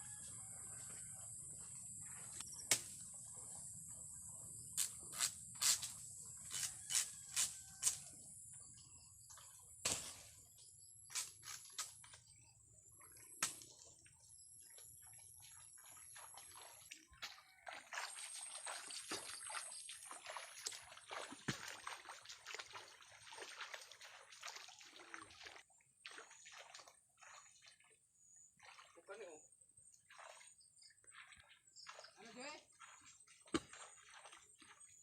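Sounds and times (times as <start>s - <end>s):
water sloshing from wading: 5.8s - 35.0s.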